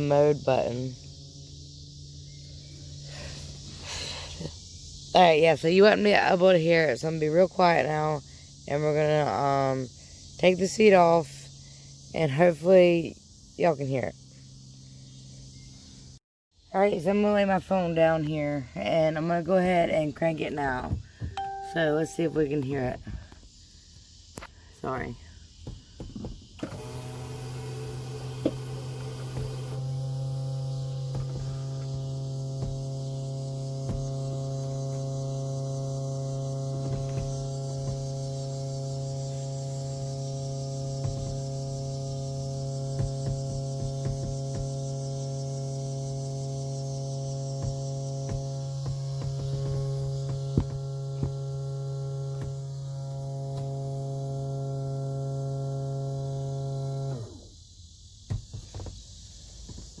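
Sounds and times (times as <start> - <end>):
electrical hum: 26.6 - 57.6.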